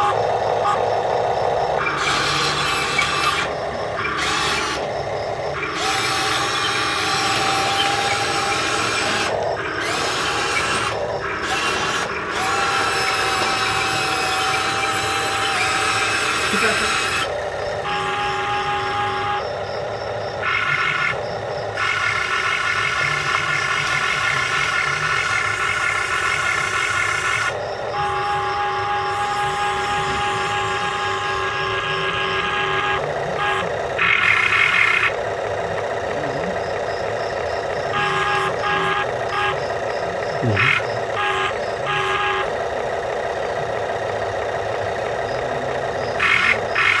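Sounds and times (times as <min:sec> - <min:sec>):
vehicle horn toots: 0:00.0 - 0:00.9, 0:16.1 - 0:19.8, 0:27.9 - 0:34.2, 0:37.8 - 0:42.7
small electric motors whining: 0:00.0 - 0:47.0
steady hum: 0:00.0 - 0:47.0.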